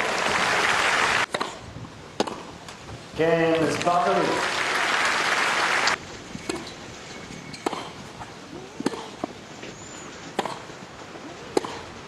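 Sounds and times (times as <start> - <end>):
tennis rackets hitting ball: 1.3 - 1.6, 2.2 - 2.5, 6.4 - 6.8, 7.6 - 8.2, 8.8 - 9.4, 10.3 - 10.7, 11.5 - 12.0.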